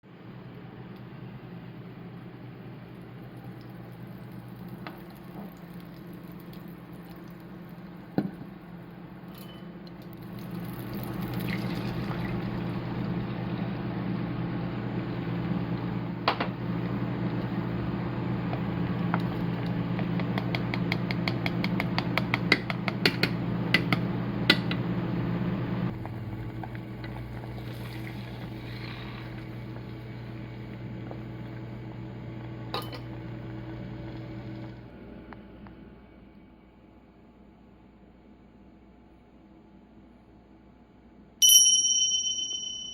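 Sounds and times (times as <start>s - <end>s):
electrical hum: 0.1s - 38.4s
utensil clicking against bowl: 20.0s - 24.8s.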